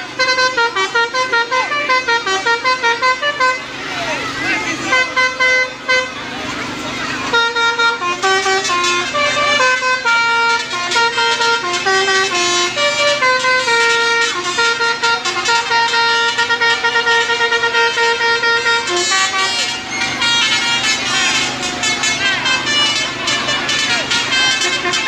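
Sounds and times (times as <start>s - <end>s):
musical air horn playing a tune: 0.0s - 25.0s.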